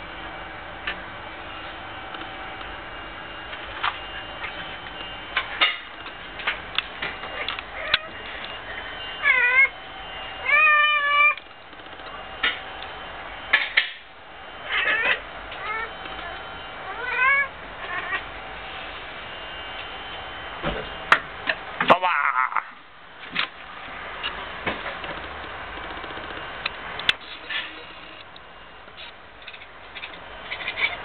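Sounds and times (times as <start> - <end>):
cat chattering and chirping: 7.3 - 8.3, 9.2 - 9.7, 14.7 - 18.3, 29.5 - 31.0.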